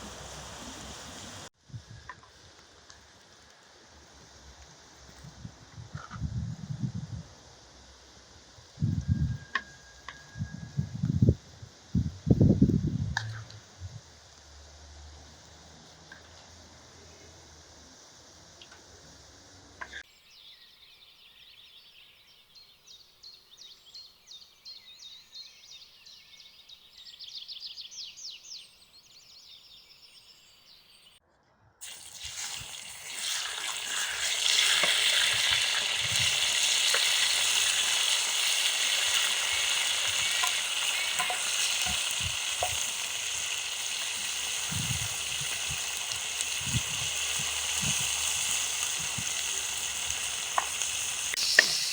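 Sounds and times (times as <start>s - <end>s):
meat sizzling in a pan: 0.0s - 1.5s, 31.8s - 51.9s.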